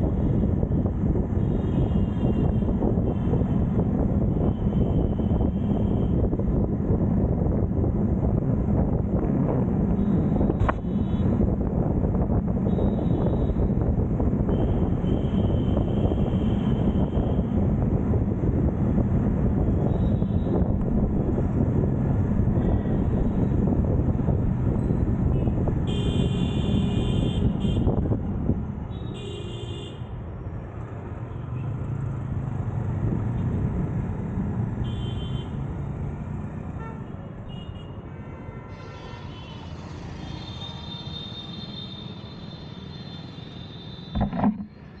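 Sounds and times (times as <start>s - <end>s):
road traffic rumble: 0.0s - 45.0s
vehicle horns honking: 25.9s - 27.9s.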